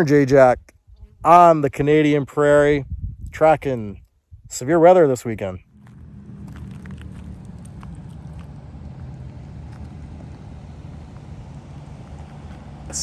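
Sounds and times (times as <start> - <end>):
road and wind noise: 0.0 - 13.0
low engine hum: 5.4 - 13.0.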